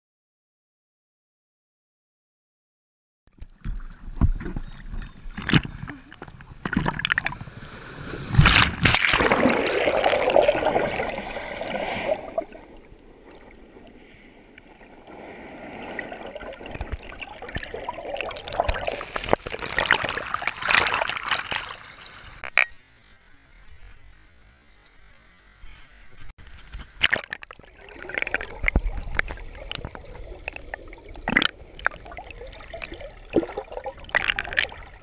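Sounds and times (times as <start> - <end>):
water splashing at shore: 5.4 - 14.0, 14.6 - 22.4, 26.9 - 35.0.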